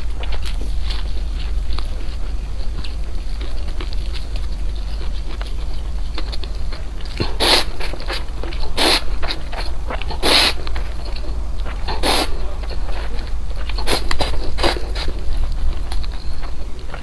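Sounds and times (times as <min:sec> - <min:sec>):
steady low hum: 0:00.0 - 0:17.0
wet chewing clicks: 0:00.0 - 0:17.0
noisy bite or slurp: 0:07.1 - 0:10.6, 0:11.9 - 0:12.4, 0:13.8 - 0:15.2.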